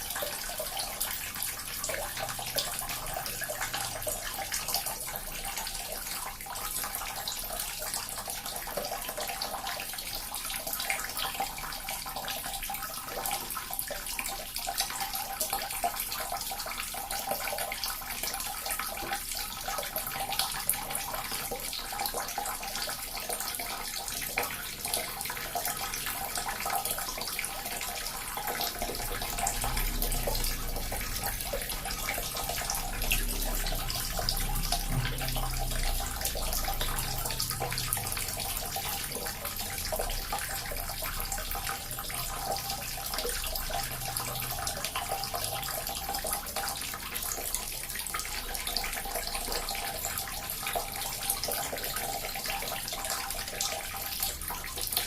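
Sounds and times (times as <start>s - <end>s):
fountain water trickling: 0.0s - 55.0s.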